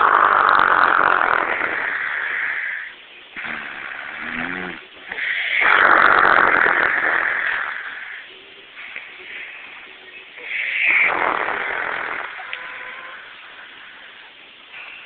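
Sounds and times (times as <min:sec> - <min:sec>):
woman snoring loudly: 0:03.4 - 0:07.8
quiet breath: 0:07.5 - 0:10.9, 0:12.4 - 0:15.0.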